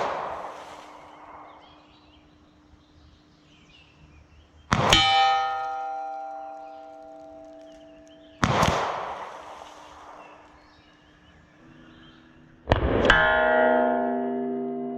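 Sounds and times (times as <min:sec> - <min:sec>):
revolver shots with echo: 0:00.0 - 0:02.2, 0:04.7 - 0:10.9
sharp crack: 0:00.0 - 0:02.2, 0:04.6 - 0:11.2
soft music with held notes: 0:11.6 - 0:14.9.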